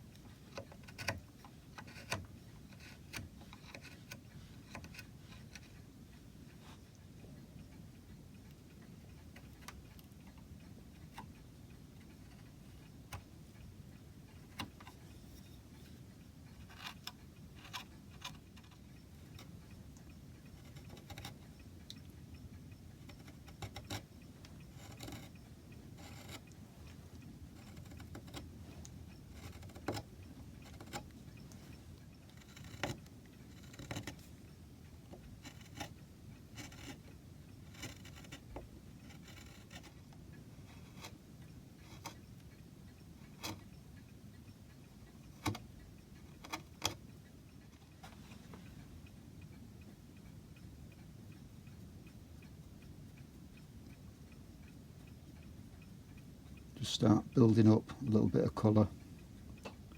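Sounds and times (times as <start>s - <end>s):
low steady hum: 0.0s - 59.9s
hand tools tapping and scraping wood: 0.5s - 5.7s, 24.7s - 25.3s, 26.0s - 26.5s, 27.6s - 34.3s, 37.7s - 40.0s.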